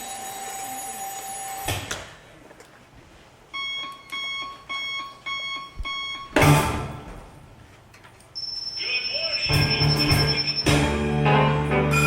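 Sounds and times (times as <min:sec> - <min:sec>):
alarm clock beeping: 0:03.6 - 0:06.4, 0:08.4 - 0:10.9.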